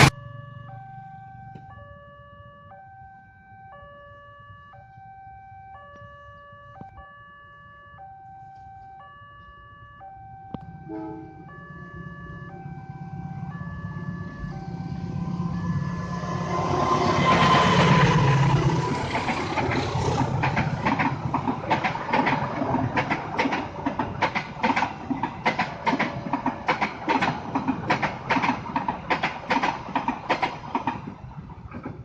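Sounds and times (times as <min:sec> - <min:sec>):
diesel train passing: 0:00.0 - 0:01.6, 0:10.6 - 0:32.0
train wheels clickety-clack: 0:14.8 - 0:32.0.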